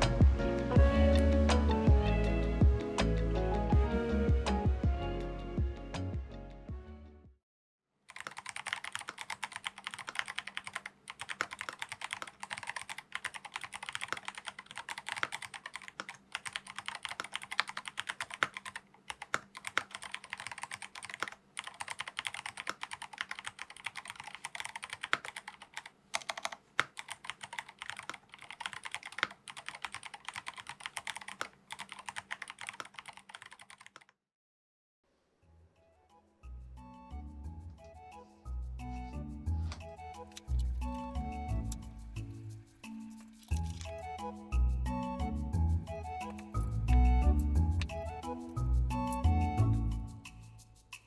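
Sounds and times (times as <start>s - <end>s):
fast mechanical keyboard typing: 8.1s - 34.1s, 42.8s - 44.2s, 46.2s - 46.8s.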